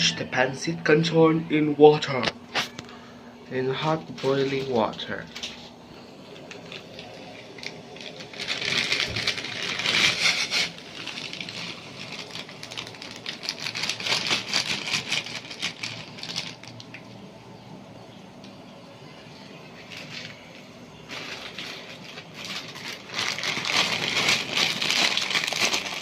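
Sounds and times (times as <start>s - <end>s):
boiling water bubbling and crackling: 6.1s - 17.4s.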